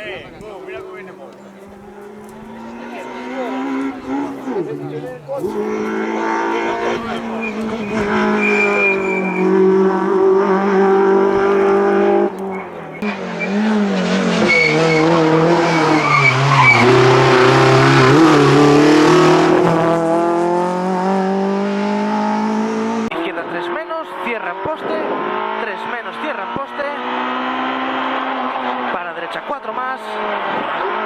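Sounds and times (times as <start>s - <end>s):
tyres skidding on road: 0.0s - 23.1s
car engine revving hard: 0.7s - 31.0s.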